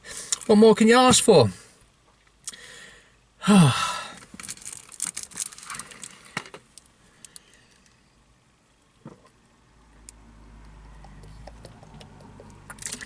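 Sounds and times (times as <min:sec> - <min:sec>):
man sighing: 0:02.5 - 0:04.2
crinkling and rustling handling noise: 0:04.1 - 0:08.0.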